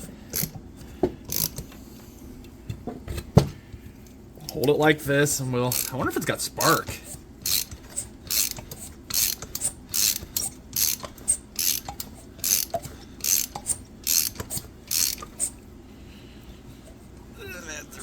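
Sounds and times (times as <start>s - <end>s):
chainsaw engine cranked by hand: 0.3s - 0.5s, 1.3s - 1.6s, 5.6s - 15.5s.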